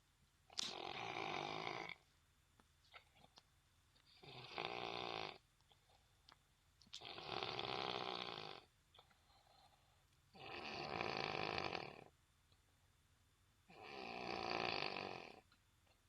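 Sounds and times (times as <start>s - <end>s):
person snoring: 0.6s - 2.0s, 4.2s - 5.4s, 7.0s - 8.7s, 10.4s - 12.1s, 13.7s - 15.4s.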